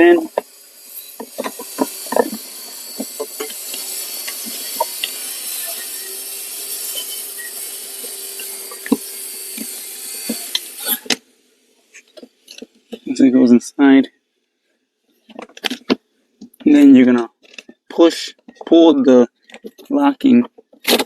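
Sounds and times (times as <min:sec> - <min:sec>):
steady hiss: 0:00.0 - 0:14.0.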